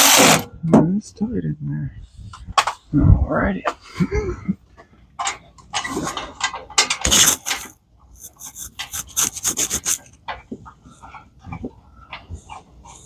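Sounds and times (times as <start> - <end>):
rapid rasping scraping strokes: 7.0 - 10.1.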